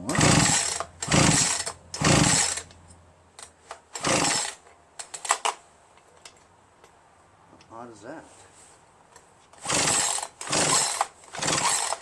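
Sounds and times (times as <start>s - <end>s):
chainsaw recoil starter pulled: 0.0s - 2.8s, 3.4s - 5.6s, 9.6s - 12.0s.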